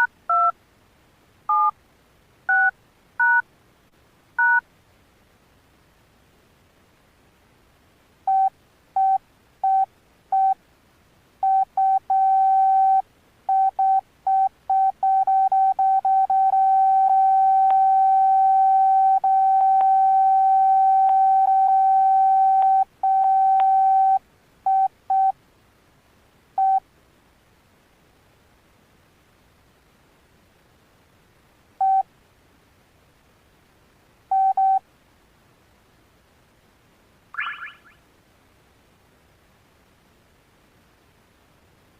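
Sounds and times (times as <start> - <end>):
phone key beeps: 1.5 - 1.7, 2.5 - 3.4, 4.4 - 4.6, 11.4 - 25.3, 31.8 - 32.0.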